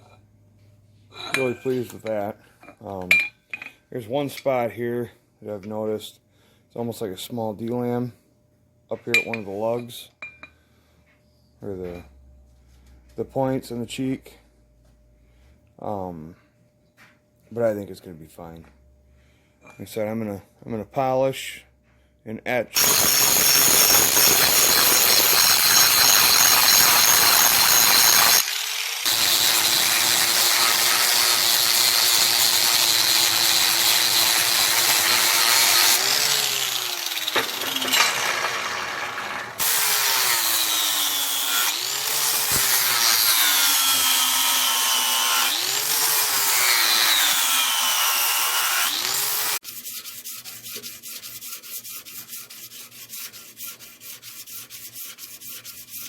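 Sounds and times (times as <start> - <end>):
power sander on metal: 22.8 - 49.6
hand sanding strokes: 48.9 - 56.0.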